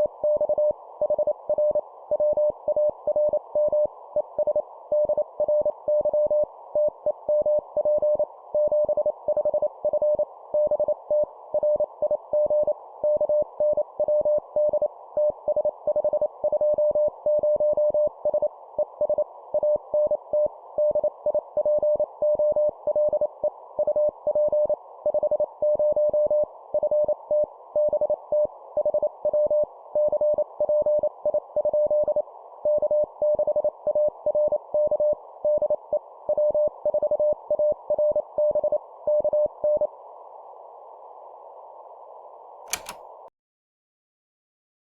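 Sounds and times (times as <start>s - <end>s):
radio receiver hiss: 42.7s - 43.0s.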